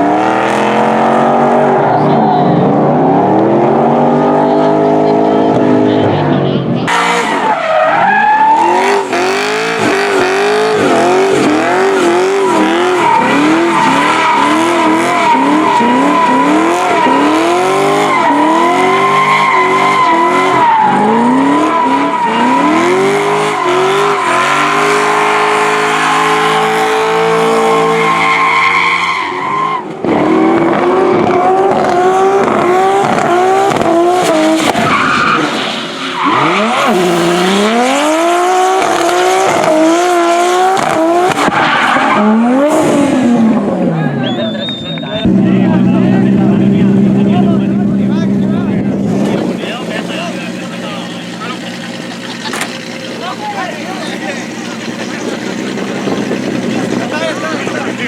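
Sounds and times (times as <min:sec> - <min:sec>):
car engine revving hard: 0:00.0 - 0:44.1, 0:45.2 - 0:58.0
tyres squealing: 0:07.0 - 0:26.6.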